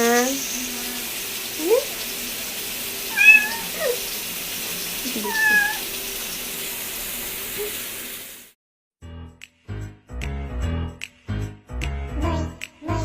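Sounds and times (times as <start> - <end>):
cat meowing: 3.1 - 4.0, 5.2 - 5.9.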